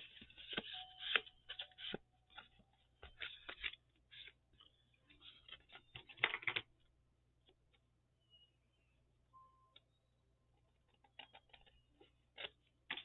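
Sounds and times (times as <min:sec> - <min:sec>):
scissors cutting paper: 0:00.0 - 0:02.5
paper rustling: 0:00.0 - 0:06.6.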